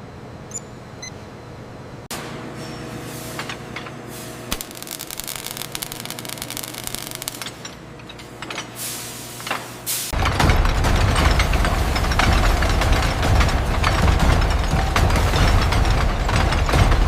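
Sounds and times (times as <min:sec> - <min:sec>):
factory machinery humming: 0:00.0 - 0:17.0
rapid clicking and crackling: 0:04.5 - 0:07.6.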